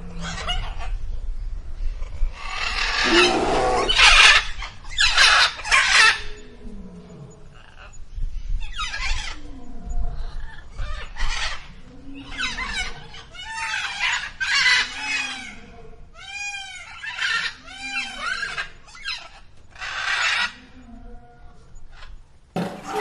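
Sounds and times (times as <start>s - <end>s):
harsh raspy bird squawks: 2.5s - 6.3s.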